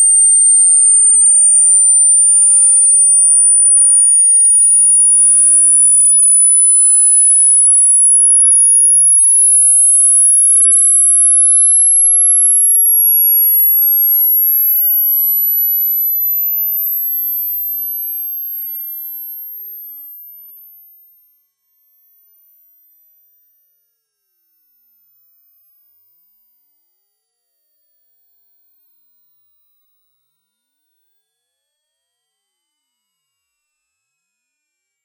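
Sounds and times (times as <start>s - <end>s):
high sine test tone sweeping: 0.0s - 21.8s.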